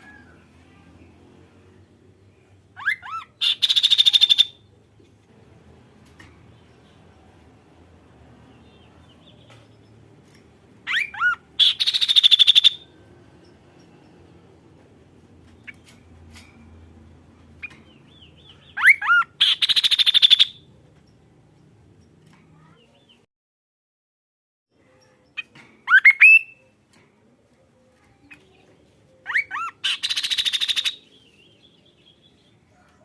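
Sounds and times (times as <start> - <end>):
songbird whistling and trilling: 2.8 - 4.6, 10.9 - 12.9, 18.4 - 20.6, 25.9 - 26.7, 29.2 - 32.3.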